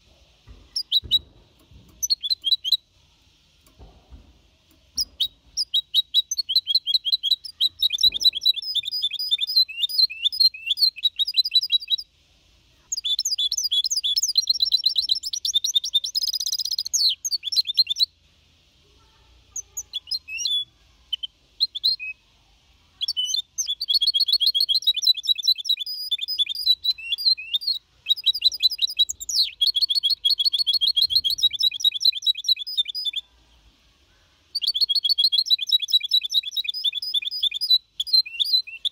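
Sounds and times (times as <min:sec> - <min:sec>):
finch singing high twittering: 0:02.0 - 0:02.8.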